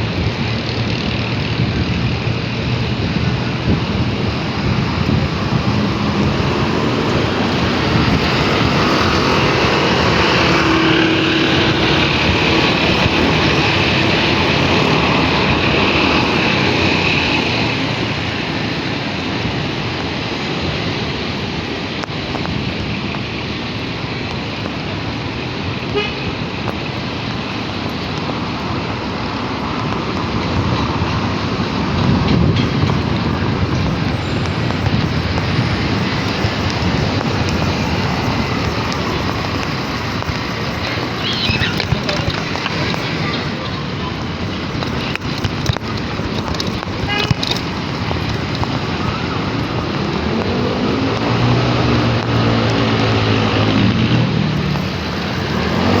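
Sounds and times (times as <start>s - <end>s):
steady droning tone: 0.0s - 18.6s
wind rushing: 0.0s - 23.9s, 24.8s - 56.0s
road traffic noise: 0.0s - 56.0s.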